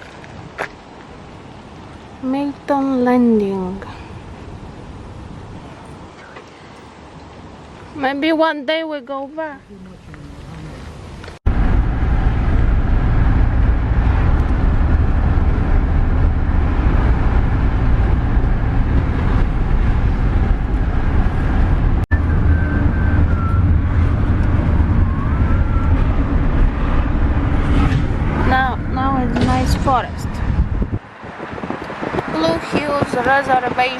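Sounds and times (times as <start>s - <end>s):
moving car rumble: 9.9s - 33.9s.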